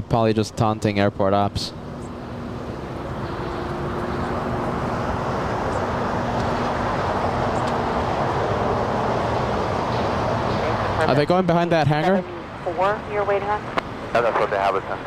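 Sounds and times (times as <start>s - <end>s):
faint steady tones: 0.0s - 15.0s
jet engines rushing: 1.6s - 15.0s.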